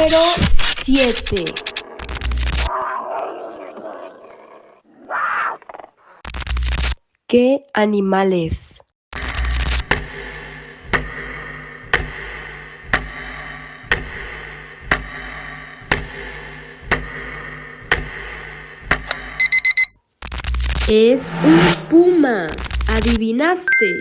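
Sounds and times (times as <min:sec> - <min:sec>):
high electronic alarm beeps: 0:19.4 - 0:19.9.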